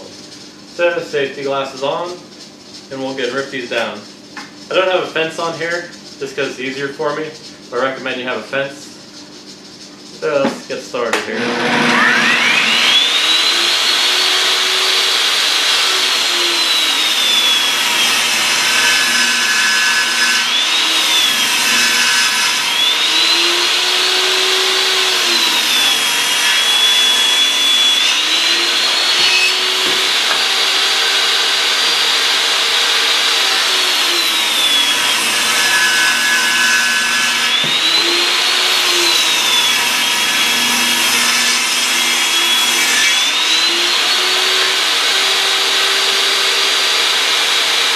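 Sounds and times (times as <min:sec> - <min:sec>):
table saw cutting wood: 0:11.1 - 0:47.9.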